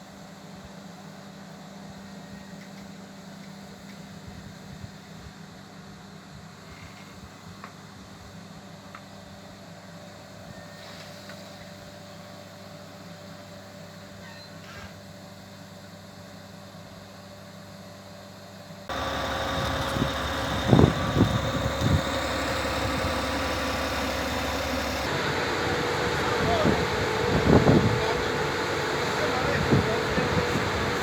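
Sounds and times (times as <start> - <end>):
steady train whine: 18.9 - 31.0
train running: 18.9 - 31.0.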